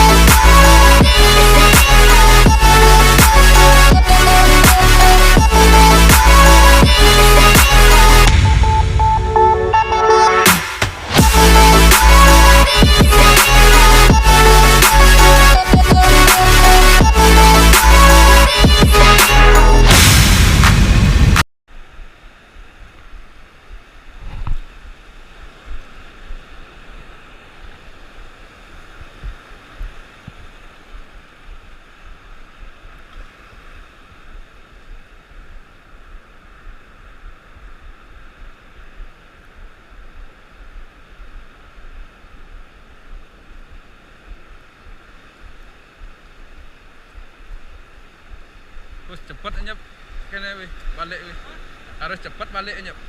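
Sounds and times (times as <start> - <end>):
rough sea surf: 0.0 - 53.0
low thumps: 1.8 - 12.2.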